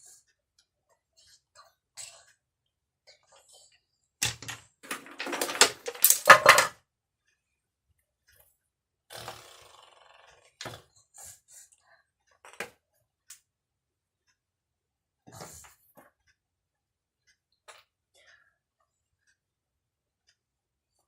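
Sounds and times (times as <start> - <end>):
wooden blocks clattering: 4.2 - 6.8.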